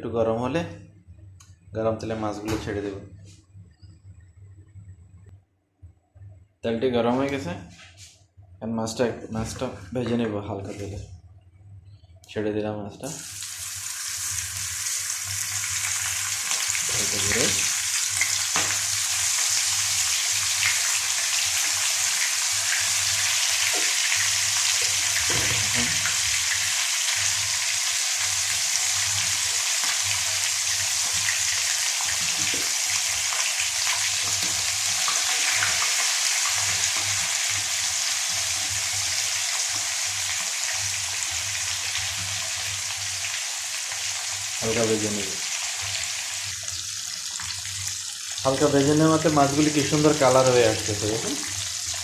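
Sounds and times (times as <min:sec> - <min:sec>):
fish sizzling in oil: 0:13.2 - 0:52.0.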